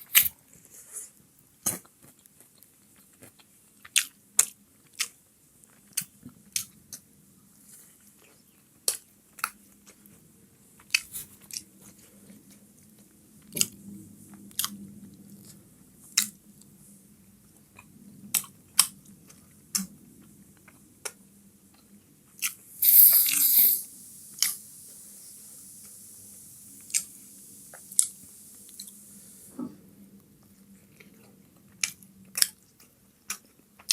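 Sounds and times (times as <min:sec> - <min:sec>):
person chewing with wet smacks: 0:01.6 - 0:13.8, 0:30.4 - 0:33.9.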